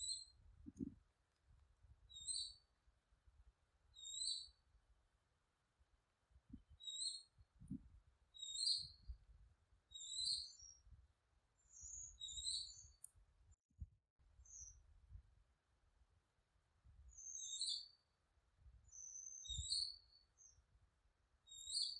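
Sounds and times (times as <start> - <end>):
owl high-pitched calls: 4.0 - 4.6, 9.9 - 10.7.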